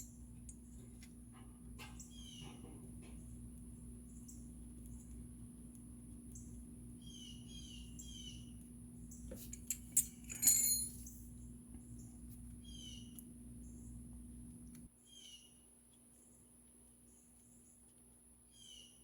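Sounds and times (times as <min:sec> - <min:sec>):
low steady hum: 0:00.0 - 0:15.0
bird chirping: 0:01.8 - 0:02.8, 0:06.4 - 0:09.3, 0:11.9 - 0:14.0, 0:15.0 - 0:16.4, 0:18.5 - 0:19.0
ringing metal clink: 0:09.5 - 0:11.1.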